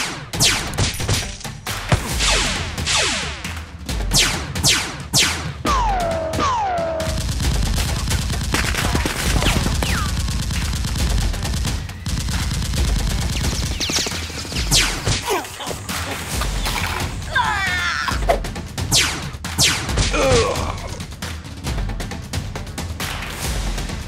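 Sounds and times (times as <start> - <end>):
rapid gunfire: 0.0 - 17.2, 18.8 - 20.4.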